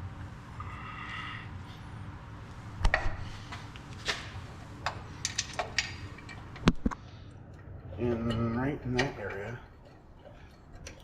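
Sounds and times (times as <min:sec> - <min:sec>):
metal parts knocking and clanking: 0:04.8 - 0:06.9, 0:07.8 - 0:11.0.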